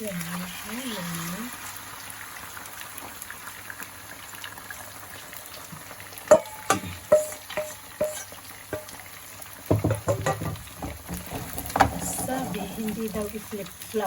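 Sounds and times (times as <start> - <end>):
tofu sizzling in oil: 0.0 - 14.0
utensil knocking on metal pan: 6.3 - 9.0, 9.7 - 13.2.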